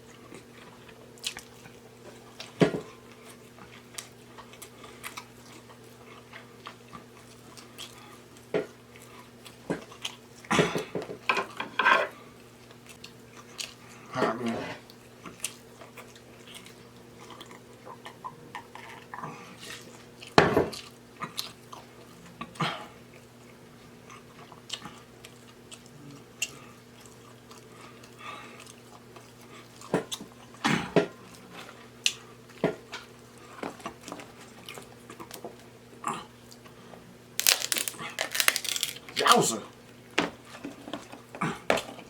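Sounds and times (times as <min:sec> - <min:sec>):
chewing and mouth smacking: 0:01.2 - 0:01.8.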